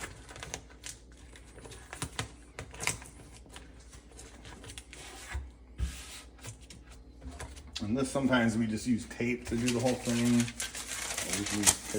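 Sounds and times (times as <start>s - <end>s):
masking tape clicks and crinkles: 9.5s - 11.9s.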